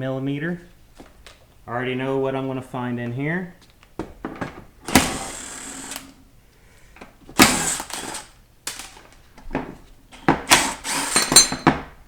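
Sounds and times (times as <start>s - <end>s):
metal tools rattling: 11.0s - 11.8s.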